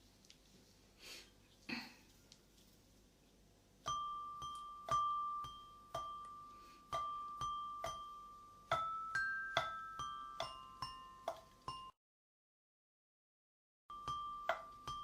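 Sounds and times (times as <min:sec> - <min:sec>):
glockenspiel notes ringing: 0:03.9 - 0:12.0, 0:13.9 - 0:15.0.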